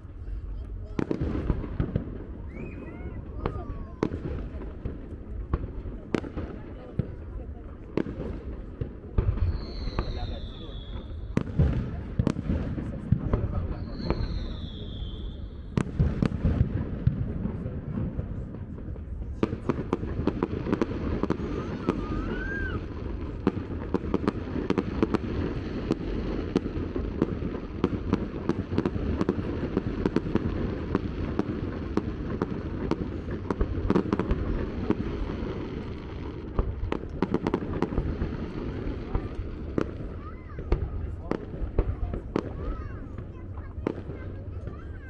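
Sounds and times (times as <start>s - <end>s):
fireworks crackling: 0.0s - 45.0s
rising firework whistle: 2.3s - 4.1s, 9.4s - 11.6s, 13.6s - 15.9s, 21.2s - 23.6s.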